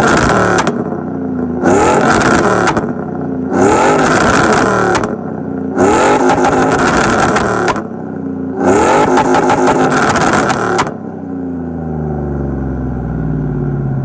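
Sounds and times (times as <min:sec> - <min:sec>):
exhaust pops and crackles: 0:00.0 - 0:01.0, 0:01.9 - 0:03.0, 0:03.8 - 0:05.2, 0:05.9 - 0:07.9, 0:08.8 - 0:11.0
pickup engine revving: 0:00.0 - 0:11.2.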